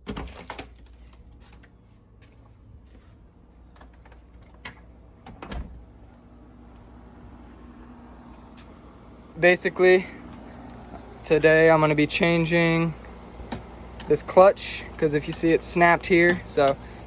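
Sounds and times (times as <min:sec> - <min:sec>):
faint steady hum: 0:00.1 - 0:17.0.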